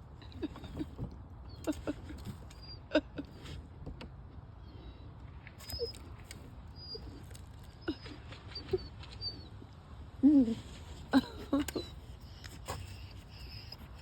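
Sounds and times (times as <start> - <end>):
dog whimpering: 0.2 - 3.3, 5.7 - 9.6, 10.2 - 14.0.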